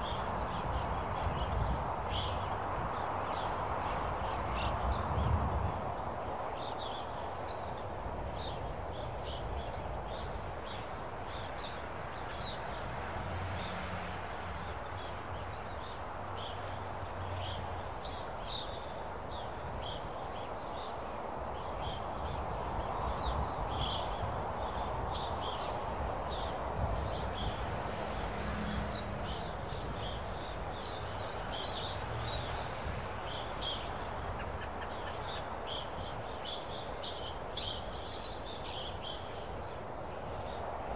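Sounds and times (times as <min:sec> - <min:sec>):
wind rush: 0:00.0 - 0:14.8, 0:21.3 - 0:34.8.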